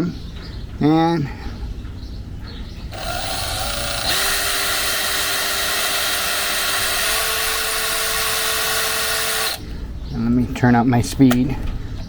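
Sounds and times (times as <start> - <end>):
electric drill drilling sheet metal: 2.9 - 9.6.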